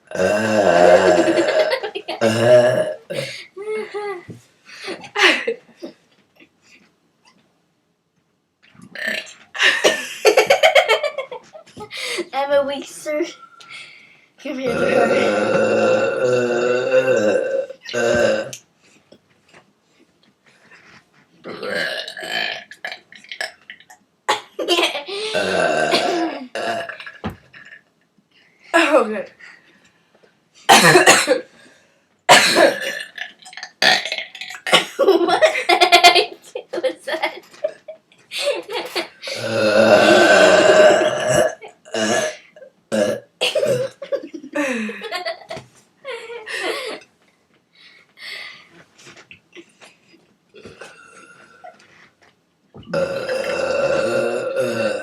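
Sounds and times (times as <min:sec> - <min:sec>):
person burping: 0:00.0 - 0:03.5, 0:08.9 - 0:10.1, 0:14.5 - 0:18.6, 0:21.4 - 0:27.8, 0:30.7 - 0:31.5, 0:32.3 - 0:35.1, 0:39.2 - 0:44.0, 0:50.6 - 0:51.8, 0:52.8 - 0:55.0.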